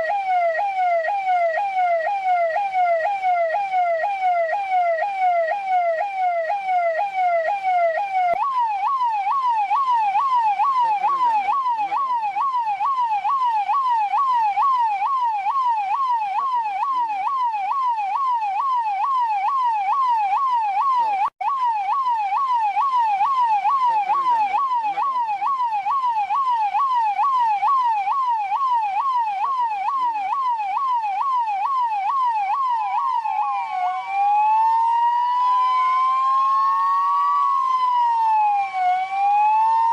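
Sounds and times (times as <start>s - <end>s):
police car siren yelping: 0.0s - 39.9s.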